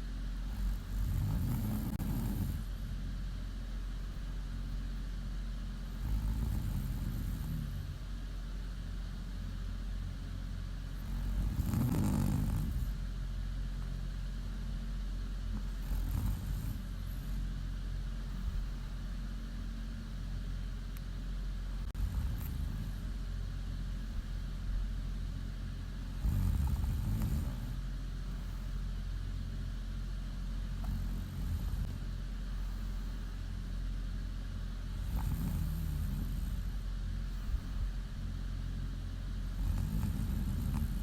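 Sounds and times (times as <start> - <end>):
steady low hum: 0.0 - 41.0
woman snoring: 0.5 - 2.8, 5.9 - 8.1, 10.9 - 13.0, 15.5 - 17.4, 21.8 - 23.2, 26.0 - 27.8, 30.8 - 32.0, 34.9 - 36.8, 39.4 - 41.0.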